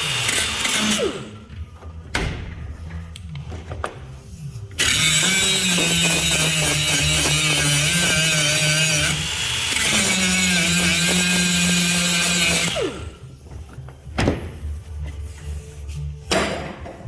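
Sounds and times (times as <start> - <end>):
power tool cutting door panel: 0.0 - 1.3, 4.8 - 13.2.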